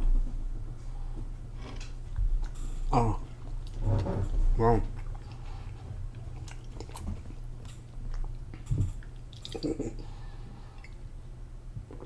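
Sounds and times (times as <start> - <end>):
low steady hum: 0.0 - 12.0
chewing and biting food: 5.0 - 10.0.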